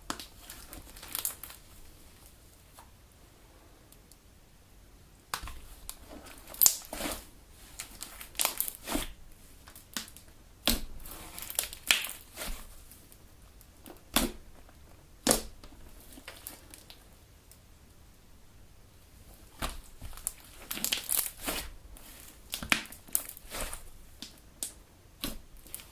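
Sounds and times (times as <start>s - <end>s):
slime squishing and popping: 0.1s - 1.5s, 15.2s - 16.5s.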